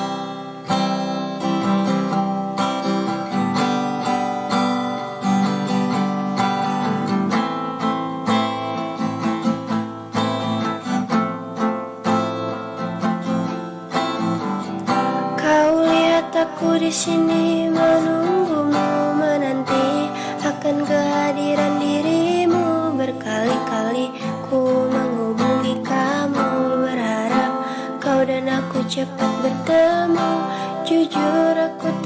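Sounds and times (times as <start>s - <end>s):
acoustic guitar strumming: 0.0s - 32.0s.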